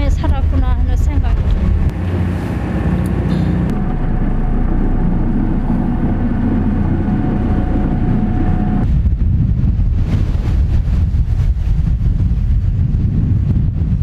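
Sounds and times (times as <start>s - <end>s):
thin steady whine: 0.0s - 9.0s
boat engine running: 0.0s - 9.3s.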